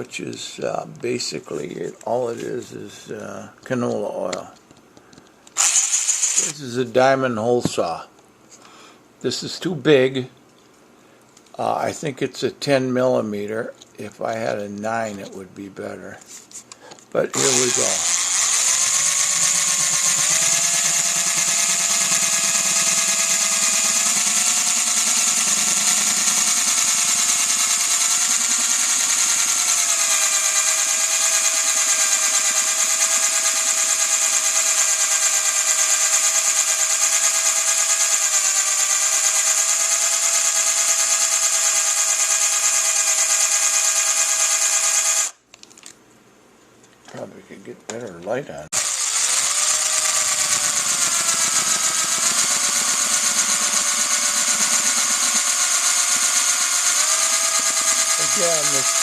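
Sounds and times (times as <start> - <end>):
drill motor whine: 5.6 - 6.6, 17.4 - 45.4, 48.8 - 59.0
hole saw grinding metal: 5.6 - 6.6, 17.3 - 45.4, 48.7 - 59.0.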